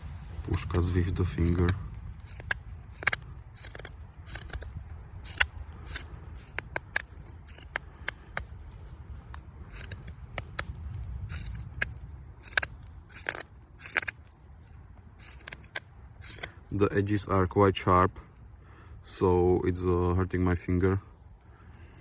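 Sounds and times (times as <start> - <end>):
knife slicing wood: 0.4 - 16.6.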